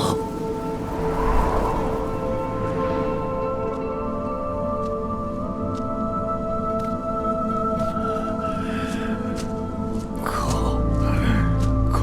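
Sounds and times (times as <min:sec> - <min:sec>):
sustained music tones: 0:00.0 - 0:07.7.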